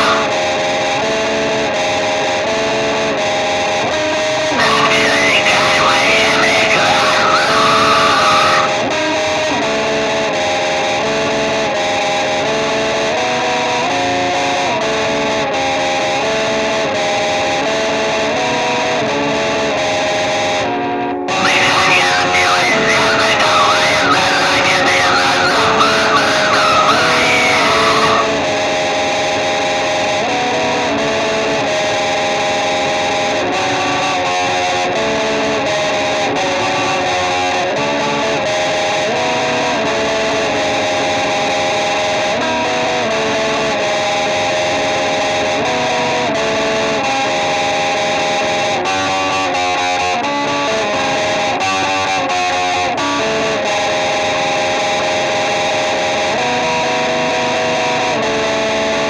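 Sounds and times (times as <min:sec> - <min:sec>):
distorted electric guitar riff: 0:00.0 - 0:00.8, 0:04.2 - 0:09.0, 0:21.3 - 0:28.9.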